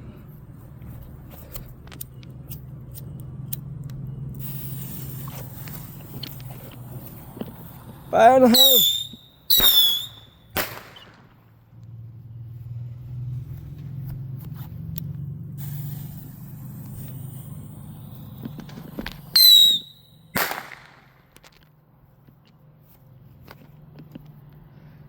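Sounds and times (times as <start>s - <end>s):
firework whistle: 8.2s - 11.2s, 15.6s - 21.1s
firework bang: 8.6s - 11.4s, 19.0s - 21.2s.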